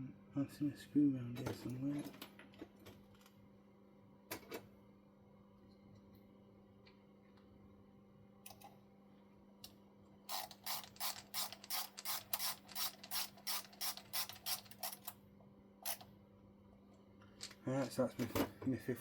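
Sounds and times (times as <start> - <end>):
ratcheting screwdriver clicking: 10.3 - 15.1.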